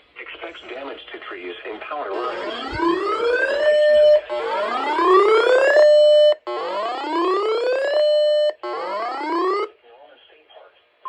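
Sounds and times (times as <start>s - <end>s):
rising electronic whoop siren: 2.1s - 9.7s.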